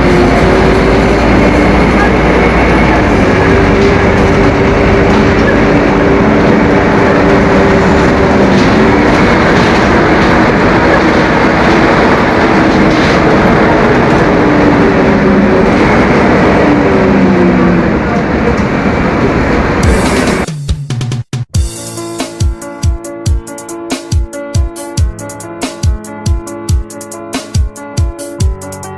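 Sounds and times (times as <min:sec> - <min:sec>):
bus diesel engine running loud: 0:00.0 - 0:20.5.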